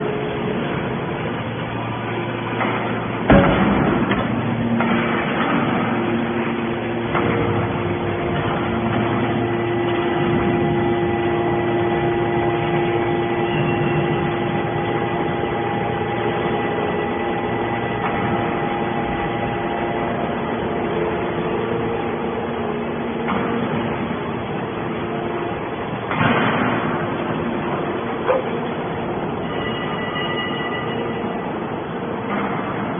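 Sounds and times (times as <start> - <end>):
baler machine hum: 0.0 - 32.9
loud metal bang: 2.5 - 19.4, 26.0 - 28.1.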